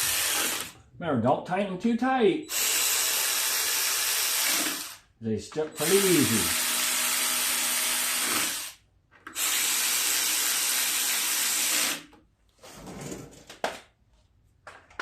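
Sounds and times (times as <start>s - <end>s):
power driver running: 0.0s - 0.7s, 2.5s - 5.0s, 5.6s - 12.0s.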